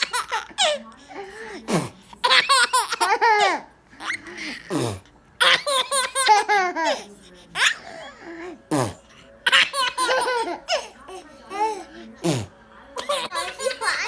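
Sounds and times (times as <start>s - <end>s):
baby laughing: 0.0s - 0.8s, 2.2s - 4.7s, 5.4s - 8.5s, 9.4s - 11.9s, 13.0s - 14.0s
toddler mouth fart noise: 4.6s - 5.1s, 8.7s - 9.0s.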